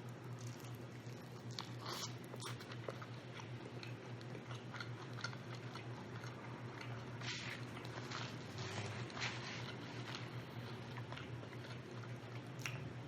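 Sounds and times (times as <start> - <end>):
person chewing food: 0.0 - 13.0
wet mouth clicks and smacks: 12.4 - 12.9.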